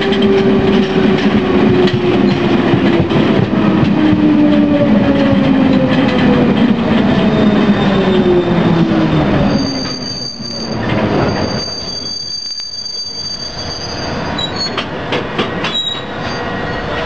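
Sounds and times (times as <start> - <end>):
high brake squeal: 7.3 - 14.8, 15.6 - 17.0.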